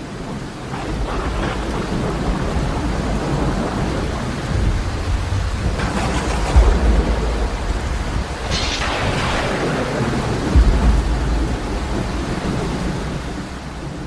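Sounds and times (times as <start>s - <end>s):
deep thunder rumbling: 0.0s - 14.0s
heavy rain: 0.0s - 14.0s
gusts of hiss: 5.1s - 13.7s.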